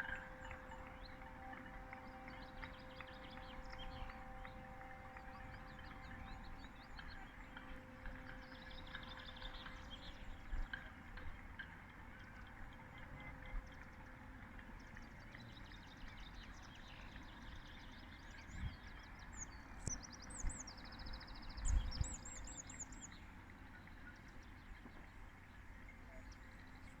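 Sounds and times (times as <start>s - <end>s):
distant wash of noise: 0.0s - 11.6s
songbird chirping and trilling: 0.0s - 14.0s, 14.6s - 27.0s.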